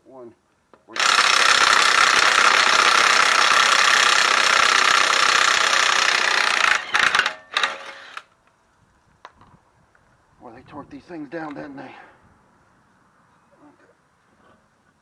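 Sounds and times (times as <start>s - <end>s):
impact wrench hammering lug nut: 1.0s - 8.2s.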